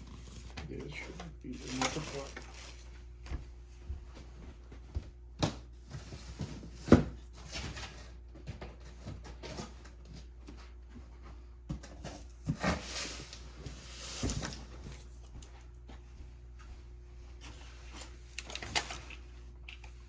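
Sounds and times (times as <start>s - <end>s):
rustling: 0.0s - 3.0s.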